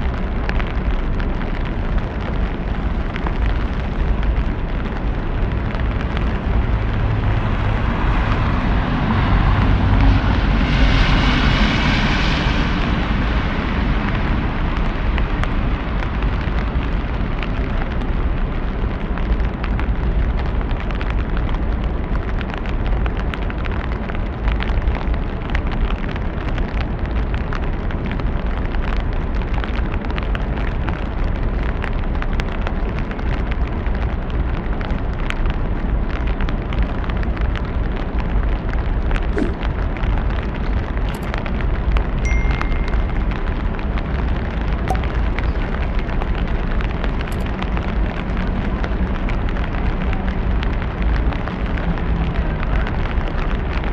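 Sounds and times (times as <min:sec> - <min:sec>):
sharp raindrop ticks: 0:00.0 - 0:08.4, 0:13.8 - 0:53.9
low rumble: 0:00.0 - 0:24.5, 0:32.4 - 0:53.9
rain hissing: 0:38.8 - 0:48.4.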